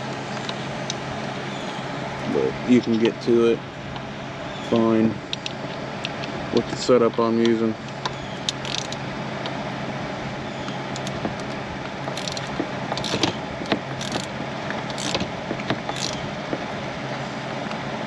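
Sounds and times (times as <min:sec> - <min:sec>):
steady background hum: 0:00.0 - 0:18.0
ratchet wrench pawl clicking: 0:08.5 - 0:09.0, 0:12.2 - 0:13.3, 0:14.0 - 0:14.3, 0:14.9 - 0:15.2, 0:15.9 - 0:16.2.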